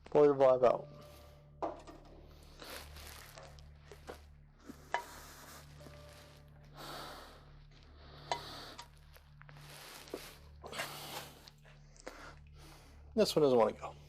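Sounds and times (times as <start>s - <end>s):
rustling handling noise: 1.8s - 6.7s, 8.8s - 10.6s.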